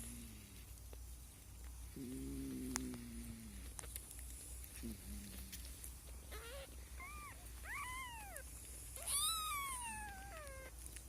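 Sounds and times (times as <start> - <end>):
kitten meowing: 6.3 - 10.7.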